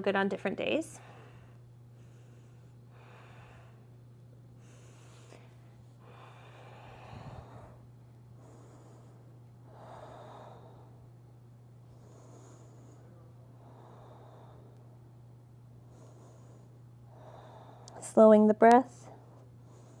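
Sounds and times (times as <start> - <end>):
low electrical hum: 0.0 - 20.0
person breathing softly: 4.6 - 11.0, 11.9 - 14.8, 15.8 - 18.0, 19.0 - 20.0.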